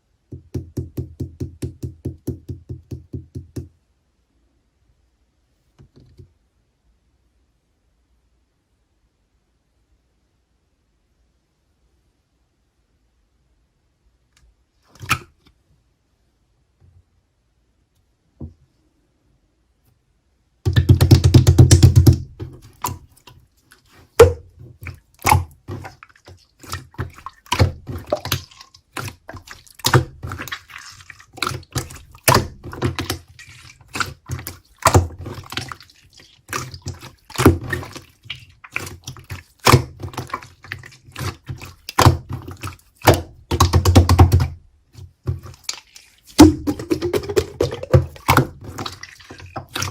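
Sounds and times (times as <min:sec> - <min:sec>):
sticky slime pops and smacks: 0:20.7 - 0:23.0, 0:43.0 - 0:44.6.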